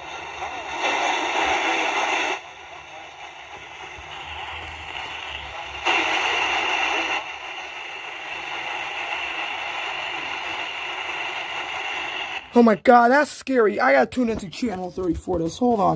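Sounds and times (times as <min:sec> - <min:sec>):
loud noise burst: 0:00.0 - 0:12.8
steady hiss from tv speaker: 0:00.0 - 0:15.9.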